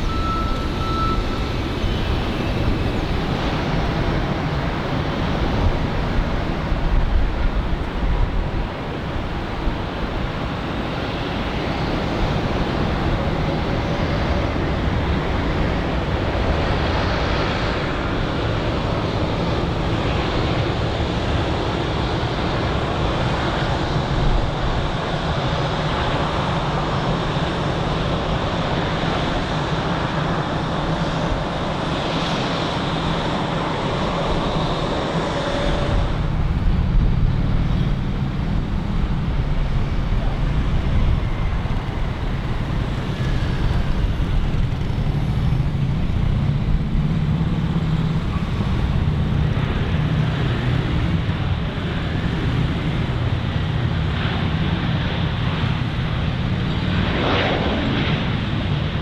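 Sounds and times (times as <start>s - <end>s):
low engine rumble: 0.0s - 25.4s, 35.0s - 55.0s
jet engines rushing with high whine: 0.0s - 59.0s.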